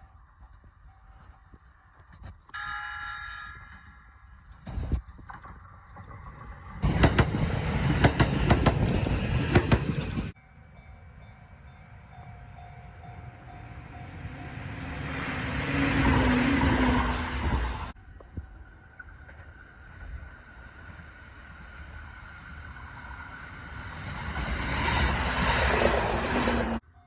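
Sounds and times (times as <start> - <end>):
train running noise: 0.0 - 26.8
train wheels clacking over rail joints: 4.6 - 10.4.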